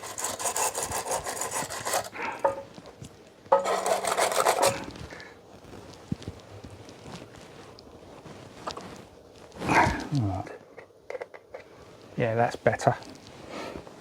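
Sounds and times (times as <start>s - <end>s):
rasping rubbing strokes: 0.0s - 2.6s, 3.5s - 5.0s.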